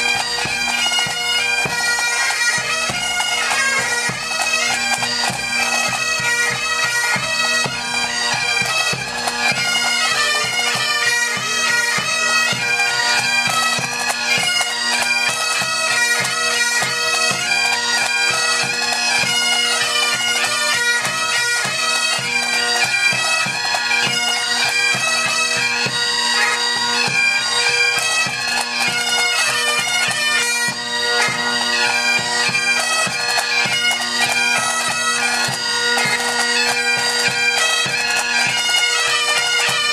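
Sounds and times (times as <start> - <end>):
bagpipes playing melody: 0.0 - 39.9.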